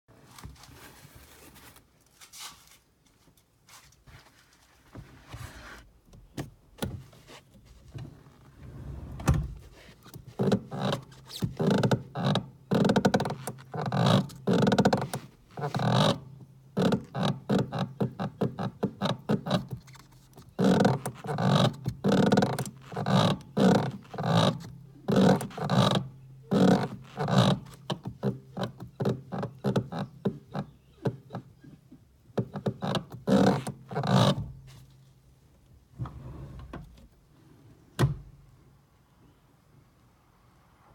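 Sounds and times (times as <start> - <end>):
clutch pedal squeaking: 9.2 - 34.6.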